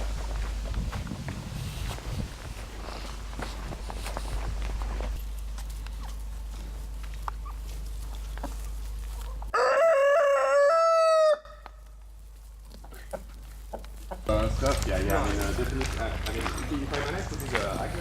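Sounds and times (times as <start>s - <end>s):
rooster crowing: 9.5s - 11.7s.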